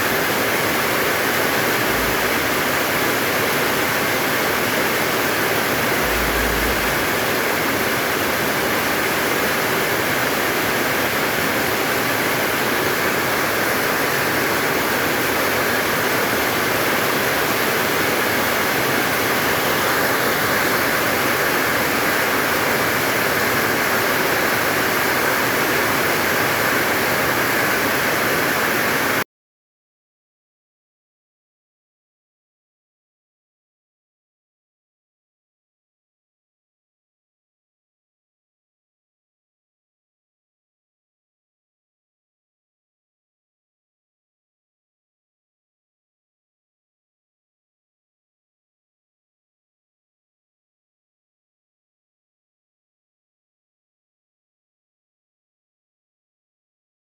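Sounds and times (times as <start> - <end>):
heavy rain pouring: 0.1 - 29.2.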